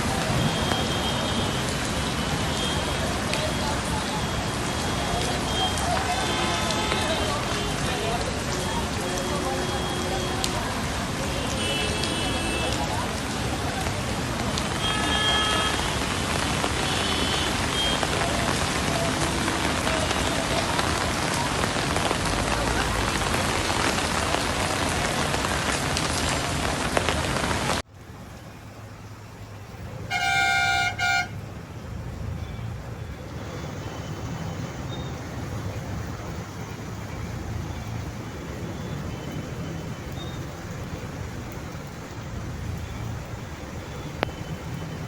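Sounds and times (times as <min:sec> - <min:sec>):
heavy rain hissing: 0:00.0 - 0:45.0
traffic rumble: 0:00.0 - 0:45.0
vehicle horn: 0:14.8 - 0:16.0, 0:30.1 - 0:31.4.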